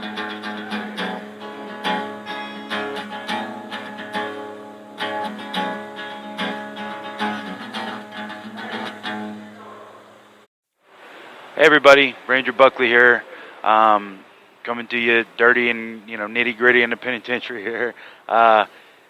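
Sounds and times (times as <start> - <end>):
solo guitar riff: 0.0 - 10.4.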